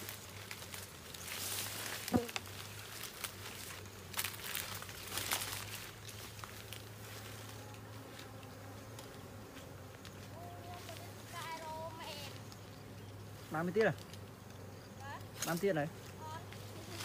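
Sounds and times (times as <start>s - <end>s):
crackling and rustling of comb: 0.0s - 9.2s
bees buzzing: 0.0s - 17.0s.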